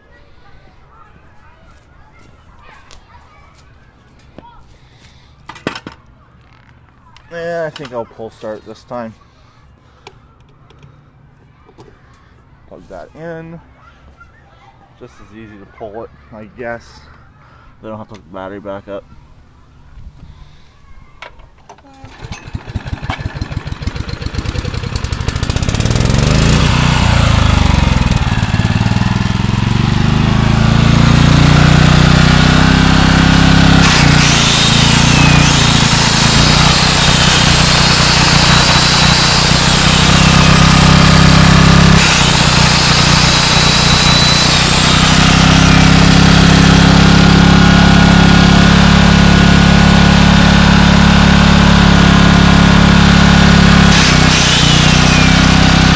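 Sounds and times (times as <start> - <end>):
generator engine running: 21.9 - 55.9.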